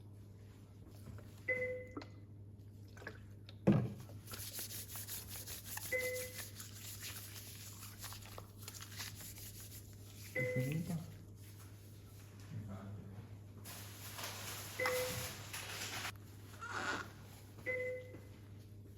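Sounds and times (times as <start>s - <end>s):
rustling handling noise: 4.3s - 12.4s, 13.6s - 16.4s
short electronic beep: 10.4s - 10.7s.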